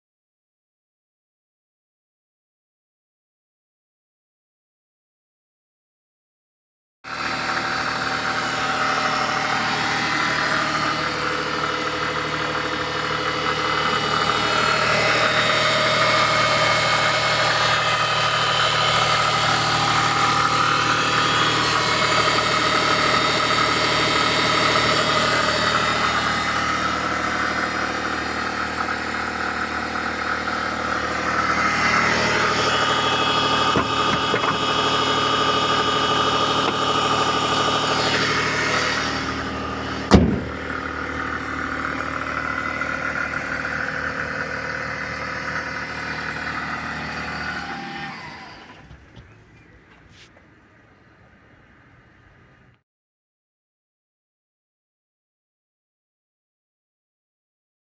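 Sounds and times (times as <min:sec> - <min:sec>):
rotary engine running: 0:07.1 - 0:49.4.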